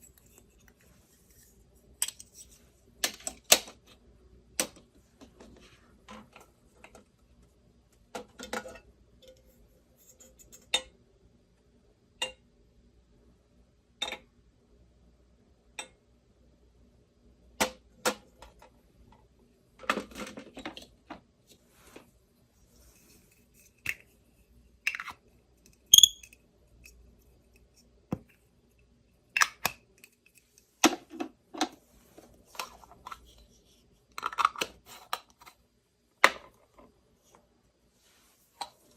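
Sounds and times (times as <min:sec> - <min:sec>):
light clicks and taps of toy kitchenware: 0:00.0 - 0:03.8, 0:08.2 - 0:10.9.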